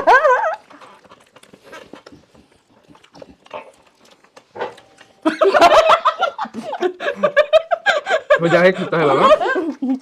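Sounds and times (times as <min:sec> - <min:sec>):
wet eating sounds: 0:00.0 - 0:07.0.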